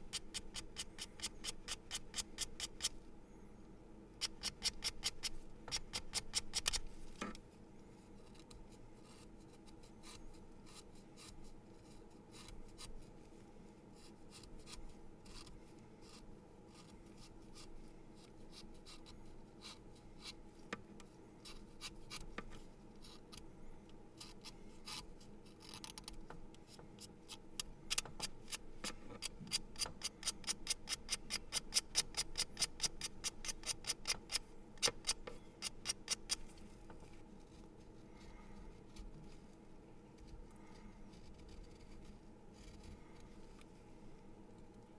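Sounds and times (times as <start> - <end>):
pencil being sharpened: 0.1 - 3.0, 4.2 - 6.8, 29.2 - 36.4.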